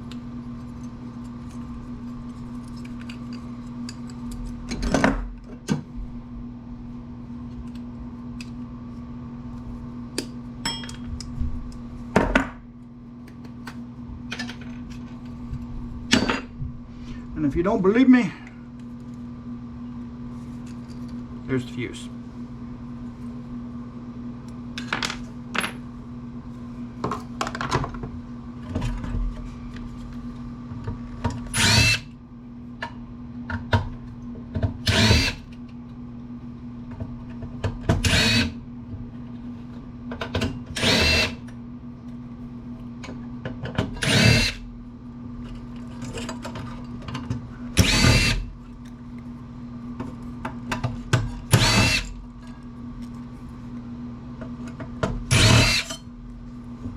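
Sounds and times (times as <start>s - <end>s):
power drill whirring: 31.6s - 32.0s, 34.9s - 35.4s, 38.1s - 38.6s, 40.8s - 41.4s, 44.0s - 44.6s, 47.8s - 48.4s, 51.5s - 52.1s, 55.3s - 55.9s.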